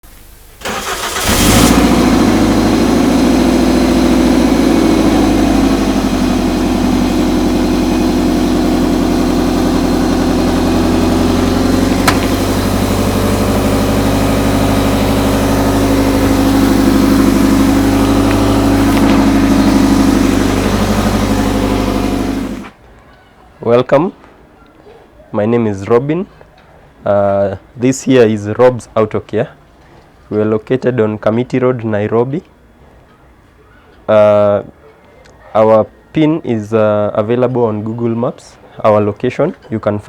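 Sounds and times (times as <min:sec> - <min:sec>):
car engine starting and idling: 0:00.1 - 0:22.8.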